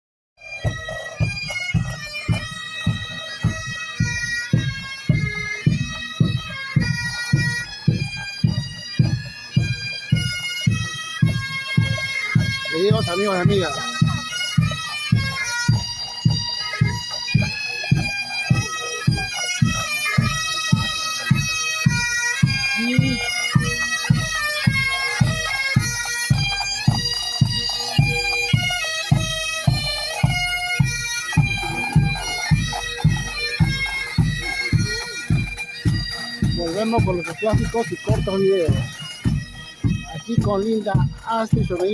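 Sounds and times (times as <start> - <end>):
bagpipes playing a march: 0.4 - 41.9
regular low drum beat: 22.8 - 23.8, 31.4 - 41.9.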